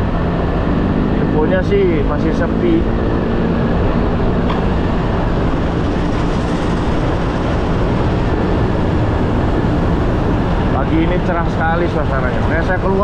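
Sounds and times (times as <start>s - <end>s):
road noise: 0.0s - 13.0s
wind rushing over microphone: 0.0s - 13.0s.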